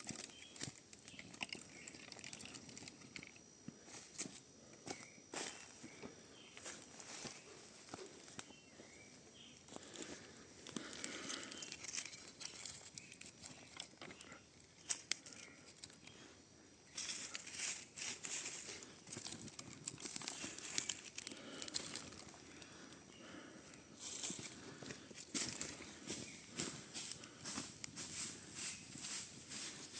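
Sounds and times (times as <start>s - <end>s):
twigs crackling and snapping: 0.0s - 3.4s, 9.7s - 16.2s, 16.9s - 23.4s.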